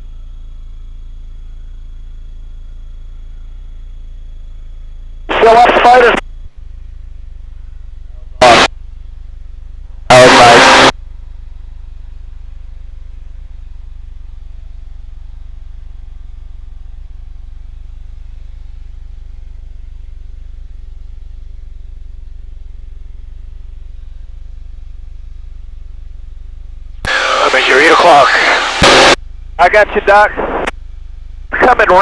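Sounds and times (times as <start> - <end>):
faint steady tones: 0.0 - 32.0
aircraft engine drone through intercom: 5.3 - 6.2, 8.4 - 8.7, 10.1 - 10.9, 27.1 - 30.6, 31.5 - 32.0.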